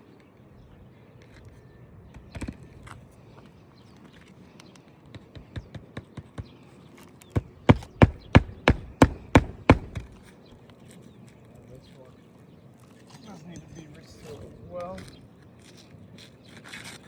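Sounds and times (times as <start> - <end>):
hammer blows on shingle roof: 5.2 - 6.7, 7.3 - 10.3.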